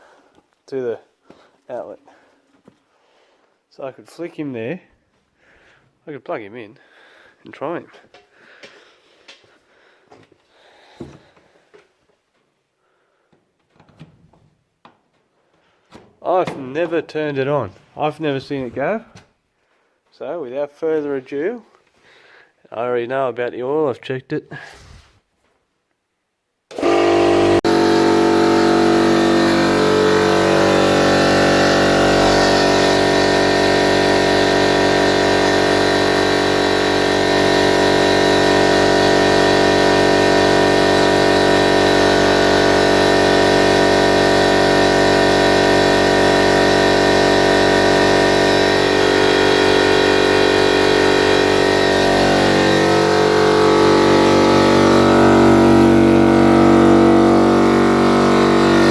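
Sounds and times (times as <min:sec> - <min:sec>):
air compressor running: 0:26.7 - 0:58.9.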